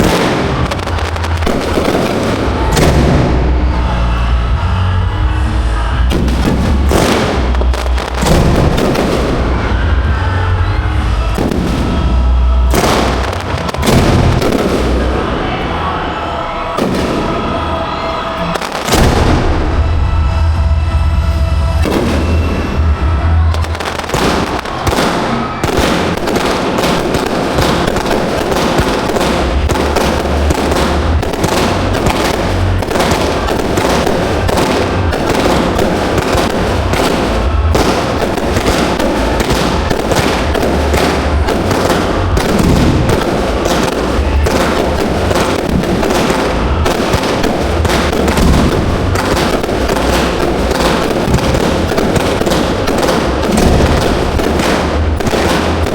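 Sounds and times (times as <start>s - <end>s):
fireworks firing and bursting: 0.0s - 20.5s, 21.4s - 55.9s.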